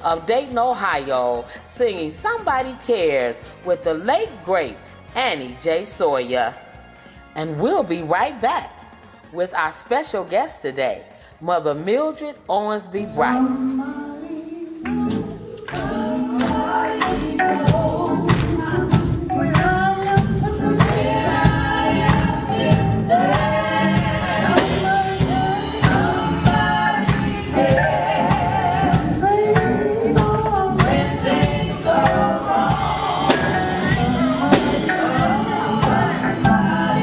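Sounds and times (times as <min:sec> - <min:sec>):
women singing together: 0:13.0 - 0:37.0
band accompaniment with steady beat: 0:14.8 - 0:37.0.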